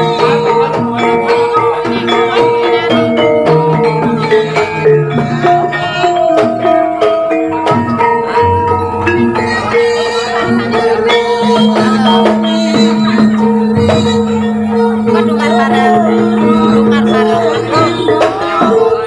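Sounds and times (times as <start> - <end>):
metallophones ringing a melody: 0.0 - 19.0
percussion: 0.0 - 19.0.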